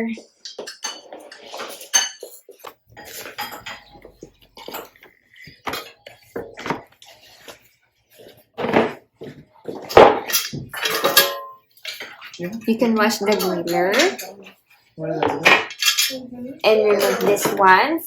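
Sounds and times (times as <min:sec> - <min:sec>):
metal grill parts clattering: 0:00.4 - 0:05.0, 0:09.8 - 0:14.4, 0:15.3 - 0:16.2.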